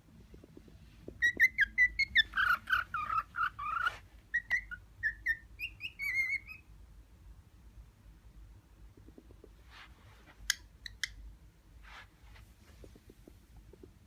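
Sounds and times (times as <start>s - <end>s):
cockatiel whistling: 1.2s - 6.7s.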